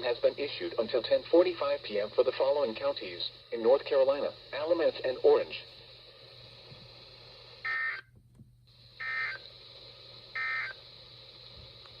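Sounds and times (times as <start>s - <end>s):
receiver hiss: 0.0s - 12.0s
digital data tone bursts: 7.6s - 8.0s, 9.0s - 9.4s, 10.4s - 10.8s.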